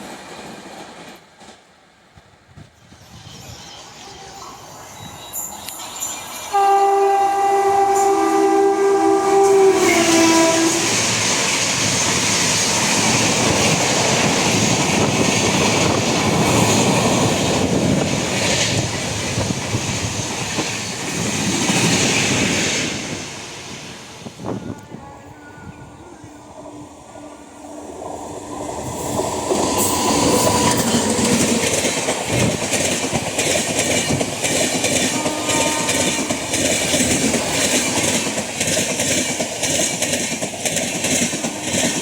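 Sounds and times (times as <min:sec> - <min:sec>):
train passing with rail clatter: 0:00.0 - 0:42.0
locomotive horn: 0:06.5 - 0:11.0, 0:35.1 - 0:36.4.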